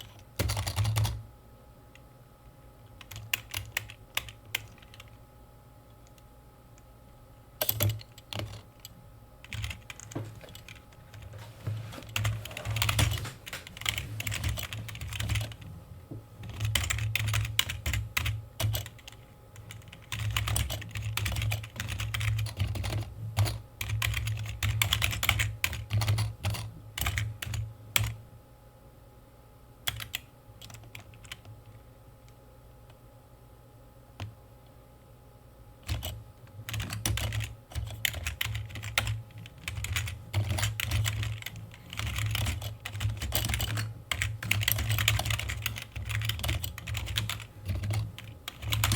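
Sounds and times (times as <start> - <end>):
typing on keyboard: 0.0 - 1.2, 3.0 - 5.1, 9.4 - 11.3, 12.1 - 15.6, 16.4 - 28.2, 29.9 - 31.5, 35.8 - 48.9.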